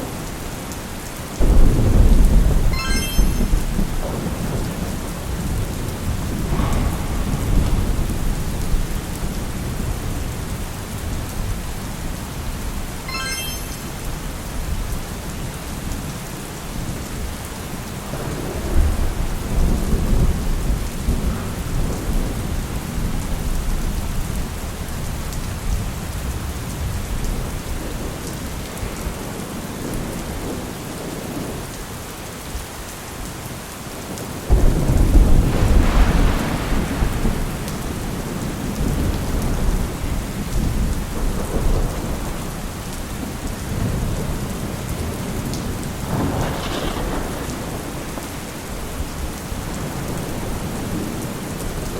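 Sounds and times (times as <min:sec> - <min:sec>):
steady rain: 0:00.0 - 0:51.9
rolling thunder: 0:01.4 - 0:11.6, 0:18.1 - 0:24.9, 0:34.5 - 0:51.9.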